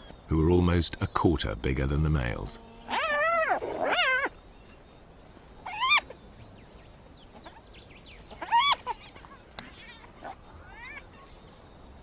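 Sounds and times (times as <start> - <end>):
hyenas calling: 2.4 - 4.4, 5.6 - 6.2, 8.3 - 9.2.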